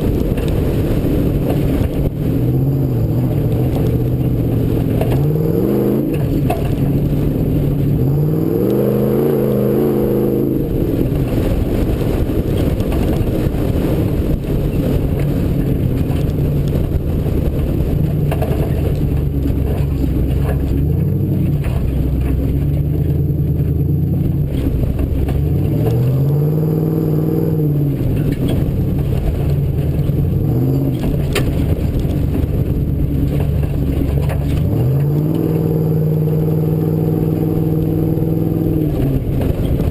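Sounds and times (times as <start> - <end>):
off-road vehicle engine revving: 0.0 - 39.9.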